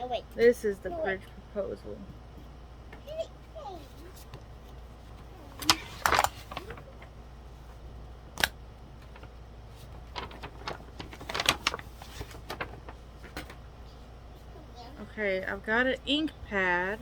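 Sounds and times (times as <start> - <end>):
papers being handled: 3.8 - 14.6.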